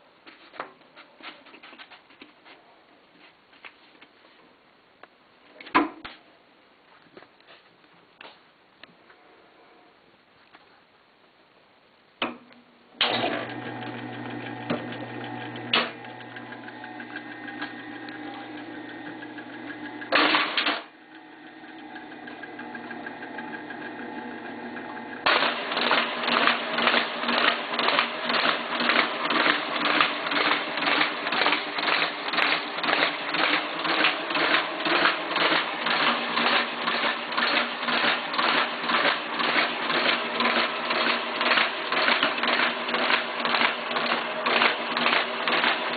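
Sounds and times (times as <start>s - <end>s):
fast mechanical clacking: 13.0s - 20.9s, 24.8s - 45.9s
duplicator machine humming and knocking: 13.0s - 45.9s.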